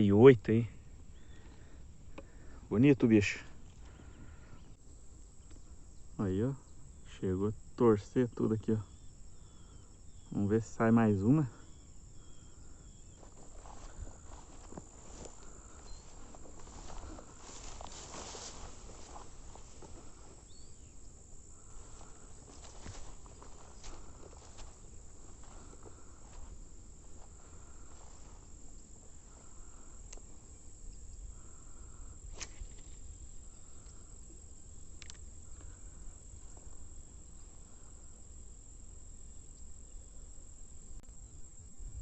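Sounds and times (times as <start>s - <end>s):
insects chirring: 0.0s - 42.0s
low insect buzzing call: 0.0s - 42.0s
sharp clicks: 34.9s - 35.3s.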